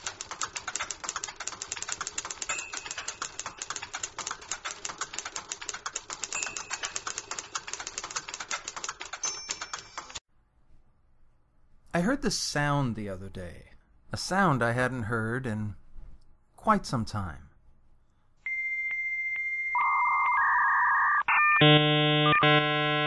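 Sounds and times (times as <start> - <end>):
mechanical typewriter typing: 0.0 - 10.2.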